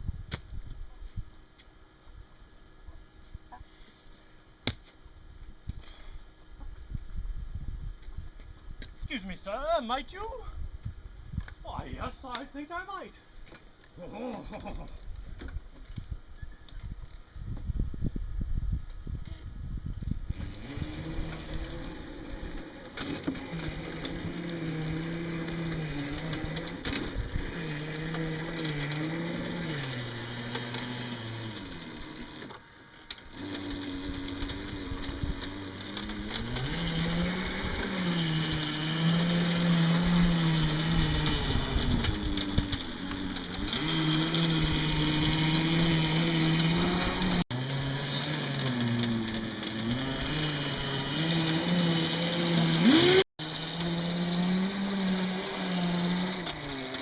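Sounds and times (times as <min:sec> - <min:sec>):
bulldozer engine under load: 0:20.3 - 0:57.0.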